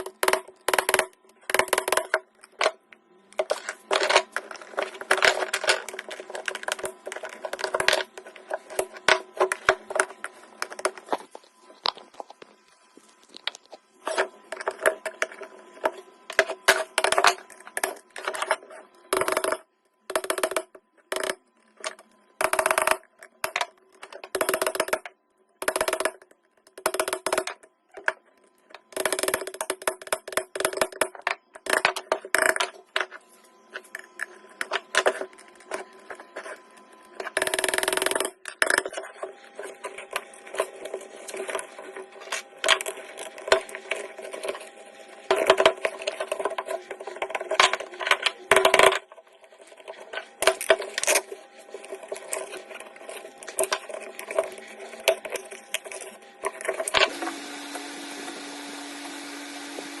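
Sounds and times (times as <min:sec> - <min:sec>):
hard objects knocking and clattering: 0:33.8 - 0:57.2
small motor humming: 0:53.0 - 1:00.0.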